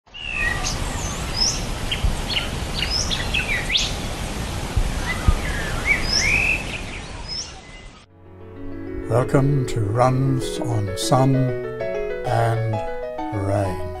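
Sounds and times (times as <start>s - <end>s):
birds chirping and whistling: 0.1s - 4.1s, 4.8s - 8.1s.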